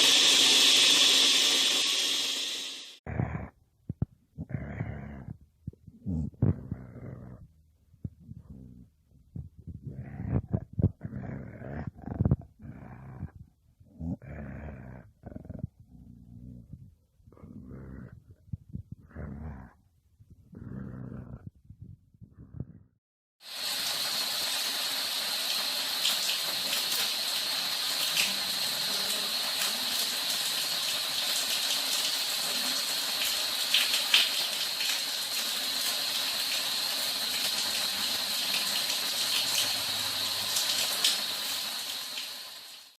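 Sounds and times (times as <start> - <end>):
running water rushing: 23.4 - 42.9.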